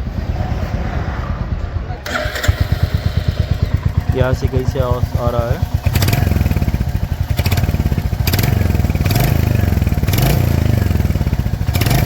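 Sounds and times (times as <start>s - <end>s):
engine clacking: 0.0s - 12.0s
motorcycle engine running: 0.0s - 12.0s.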